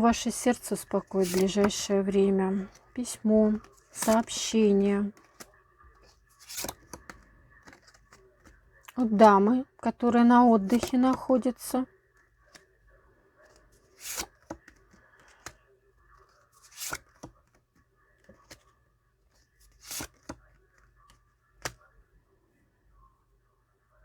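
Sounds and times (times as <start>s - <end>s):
cards swishing on table: 1.1s - 1.8s, 3.6s - 4.4s, 6.4s - 7.1s, 14.0s - 14.6s, 16.6s - 17.3s, 19.7s - 20.4s.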